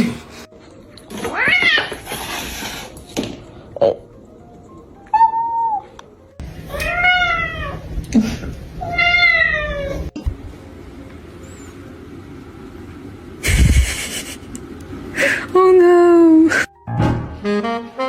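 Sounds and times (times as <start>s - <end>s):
cat meowing: 1.1s - 2.1s, 5.1s - 6.0s, 6.7s - 7.8s, 8.8s - 10.2s.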